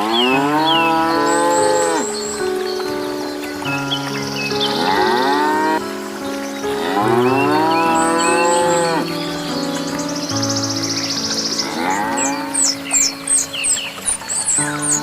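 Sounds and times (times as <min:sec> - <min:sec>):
cow mooing: 0:00.0 - 0:02.0
soft background music: 0:00.0 - 0:15.0.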